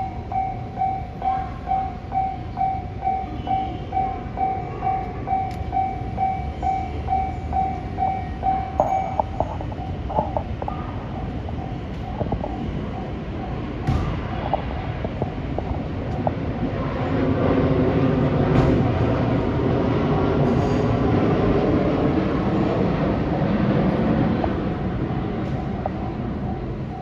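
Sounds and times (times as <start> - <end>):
level crossing bell ringing: 0.0 - 10.0
freight train rumble: 0.0 - 27.0.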